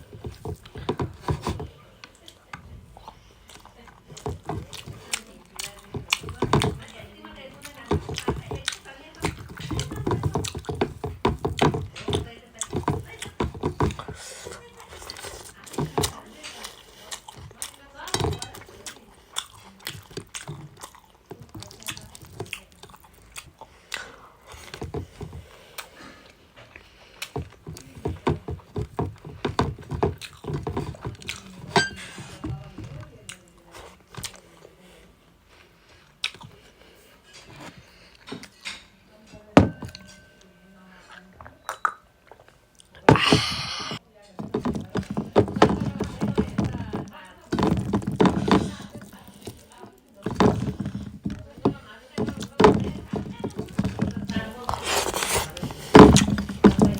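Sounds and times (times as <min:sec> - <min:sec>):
wet chewing and smacking: 0:00.0 - 0:38.6, 0:41.4 - 0:44.0, 0:44.8 - 0:56.9
crunchy chewing and biting: 0:18.5 - 0:28.0, 0:30.1 - 0:31.4.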